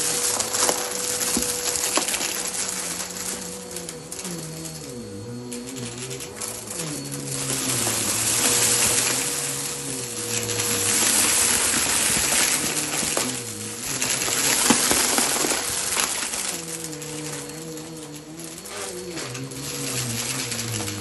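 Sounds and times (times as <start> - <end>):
debris clicking in vacuum: 0.0 - 21.0
vacuum cleaner running: 0.0 - 21.0.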